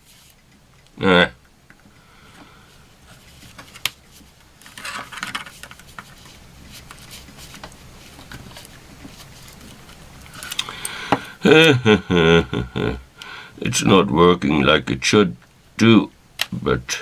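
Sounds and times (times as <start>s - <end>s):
scratching: 0.0s - 11.4s.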